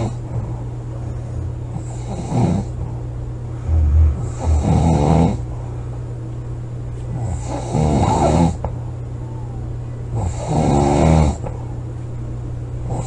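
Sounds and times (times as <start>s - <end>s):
steady low hum: 0.0s - 13.0s
woman snoring loudly: 3.6s - 5.4s, 7.2s - 8.6s, 10.2s - 11.5s.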